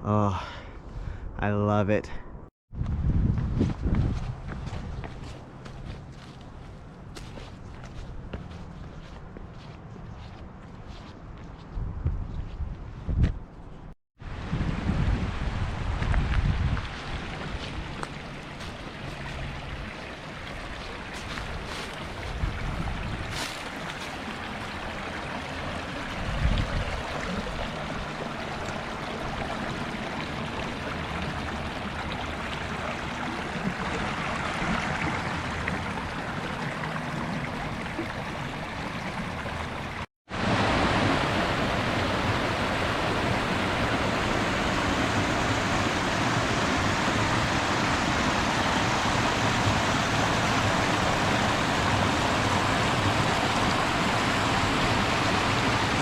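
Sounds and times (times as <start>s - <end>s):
stream water rushing: 14.2s - 56.0s.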